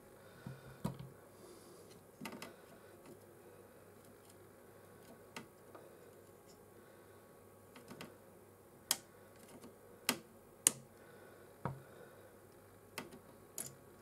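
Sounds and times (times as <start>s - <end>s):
snips clicking and snapping: 8.9s - 10.9s.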